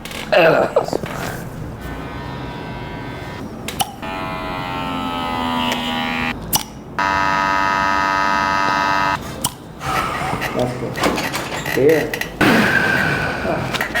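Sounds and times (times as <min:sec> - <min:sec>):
steady electric buzz: 0:01.6 - 0:06.4, 0:07.0 - 0:09.2.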